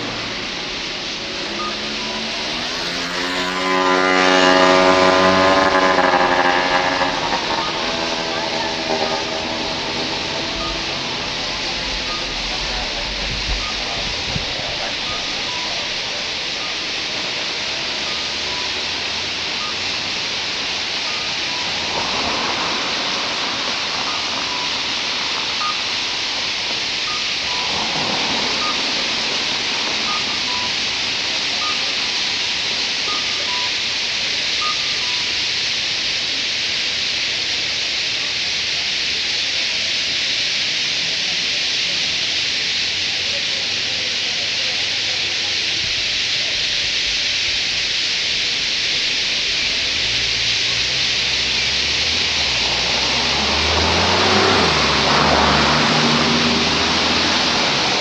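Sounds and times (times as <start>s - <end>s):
low rumbling sound: 0.0s - 16.9s.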